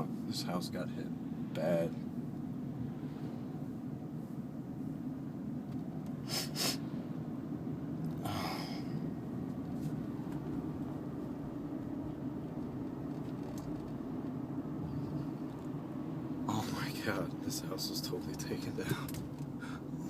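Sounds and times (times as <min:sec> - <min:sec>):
car engine and tyres rumble: 0:00.0 - 0:20.0
person breathing: 0:08.2 - 0:09.1, 0:19.6 - 0:20.0.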